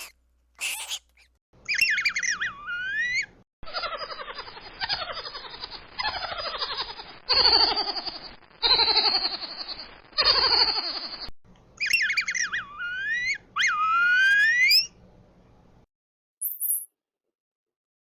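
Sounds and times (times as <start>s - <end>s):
mouse squeaking: 0.0s - 3.3s, 11.8s - 14.9s, 16.4s - 16.9s.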